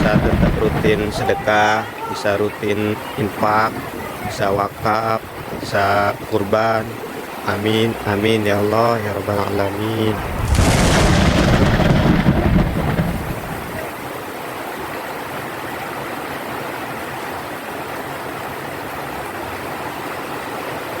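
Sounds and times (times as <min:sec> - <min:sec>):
thunder rumbling: 0:00.0 - 0:01.5, 0:10.0 - 0:14.1
heavy rain falling: 0:00.0 - 0:15.2.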